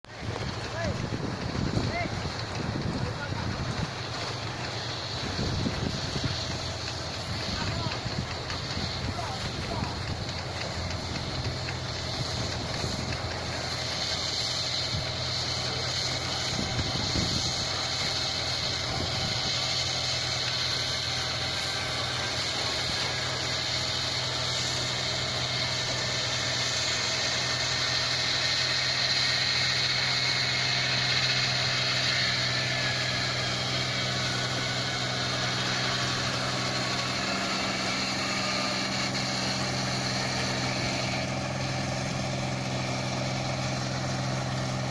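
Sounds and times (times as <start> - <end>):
diesel engine running steadily: 0.0 - 44.9.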